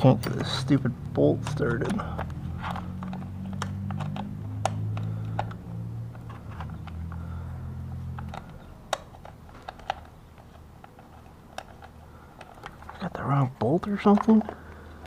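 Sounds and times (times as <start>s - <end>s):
metallic clicks of bolt and tools: 0.0s - 0.7s
low steady hum: 0.0s - 15.0s.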